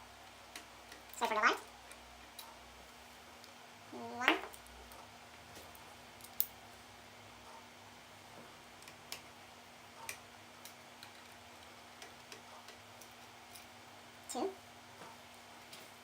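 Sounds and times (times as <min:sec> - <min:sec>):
faint steady hum: 0:00.0 - 0:16.0
small tools clicking and tapping: 0:00.5 - 0:02.6, 0:04.4 - 0:06.6, 0:08.8 - 0:09.3, 0:10.0 - 0:13.7.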